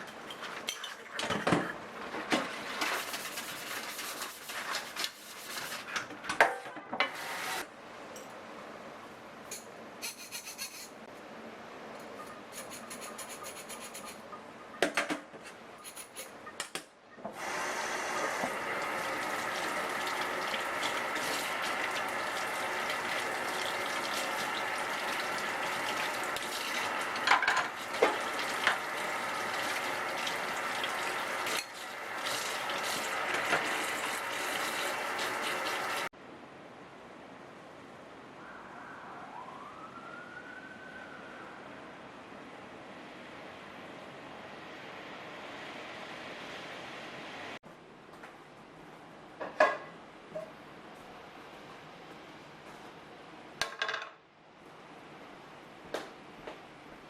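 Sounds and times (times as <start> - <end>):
dishes clinking: 0.0 - 1.8, 27.3 - 28.2.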